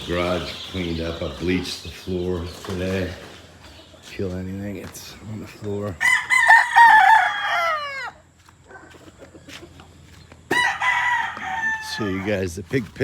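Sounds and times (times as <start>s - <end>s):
rooster crowing: 6.0s - 8.2s, 10.5s - 12.4s.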